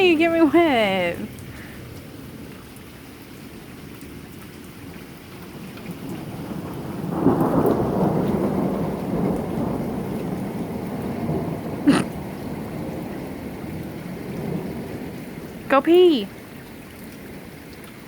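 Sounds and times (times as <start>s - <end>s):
steady rain: 0.0s - 18.0s
rolling thunder: 5.9s - 15.7s.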